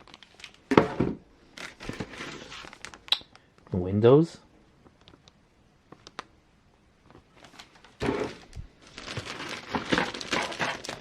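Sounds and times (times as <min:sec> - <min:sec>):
plastic packaging crinkling: 0:00.0 - 0:00.7, 0:01.5 - 0:03.6, 0:07.1 - 0:11.0.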